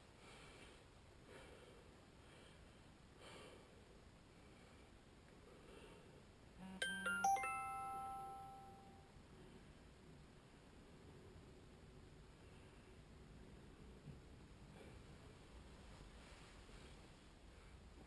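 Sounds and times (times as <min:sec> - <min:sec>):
faint room noise: 0:00.0 - 0:18.0
phone notification chime: 0:06.8 - 0:09.0.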